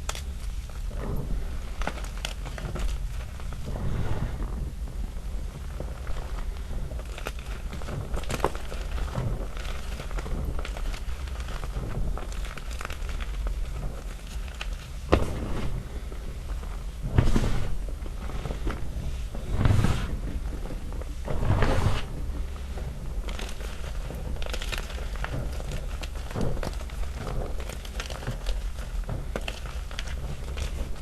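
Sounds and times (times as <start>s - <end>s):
chalk chunks crushed: 5.9s - 19.6s, 20.3s - 31.0s.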